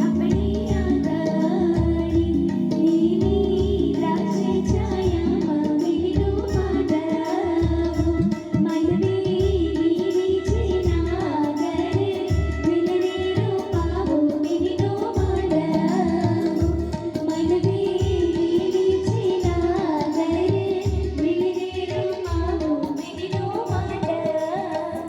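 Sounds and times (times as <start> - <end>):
bass-heavy drum beat: 0.0 - 7.0
person singing: 0.0 - 25.0.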